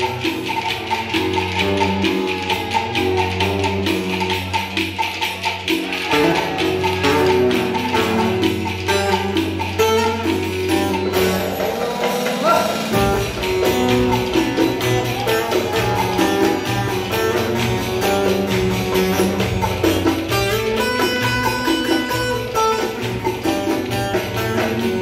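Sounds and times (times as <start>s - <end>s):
plucked string melody: 0.0s - 11.8s, 12.9s - 25.0s
percussion beat: 0.0s - 25.0s.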